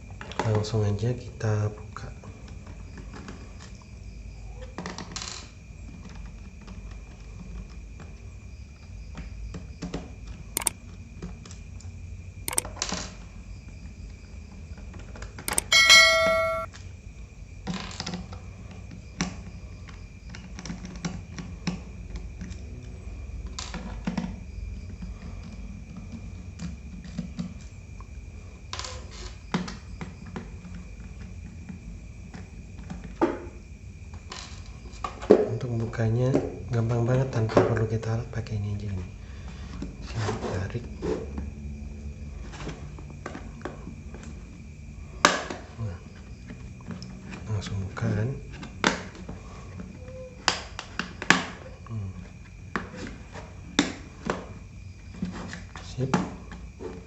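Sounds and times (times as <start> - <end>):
metallic clink: 15.5 - 16.7.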